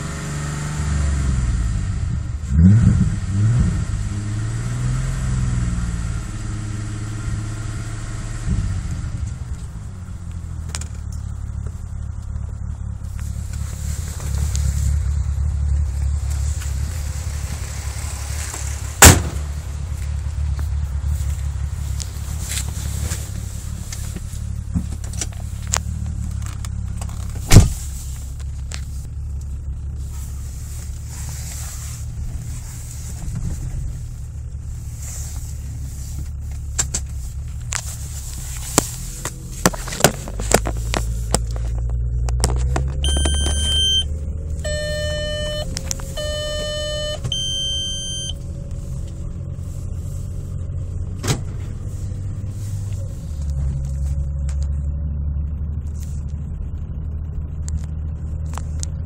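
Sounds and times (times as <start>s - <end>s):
engine clicks: 9.1s - 31.1s, 35.5s - 46.2s
engine idling roughly: 9.4s - 42.8s, 48.3s - 59.0s
electronic chime tones: 43.0s - 48.4s.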